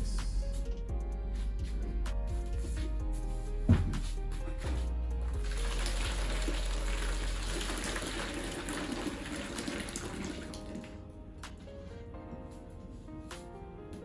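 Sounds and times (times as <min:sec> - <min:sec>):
background music: 0:00.0 - 0:14.0
liquid pouring into bowl: 0:05.4 - 0:10.8.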